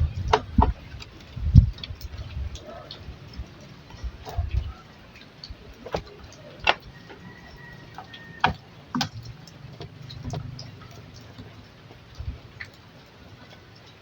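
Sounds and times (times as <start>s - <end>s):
sharp clicks and knocks: 0.2s - 12.8s.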